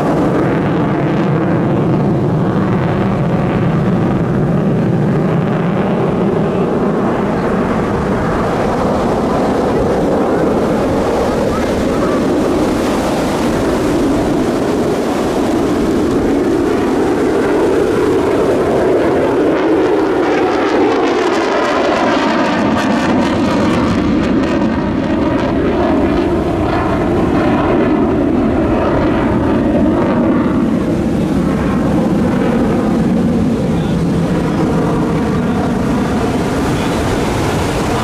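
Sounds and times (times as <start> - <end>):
jet engine roar: 0.0 - 38.0.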